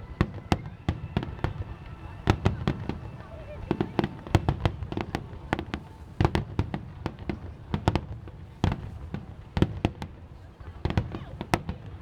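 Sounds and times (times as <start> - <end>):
low rumble of explosions: 0.0 - 9.4
fireworks bangs and cracks: 0.0 - 12.0.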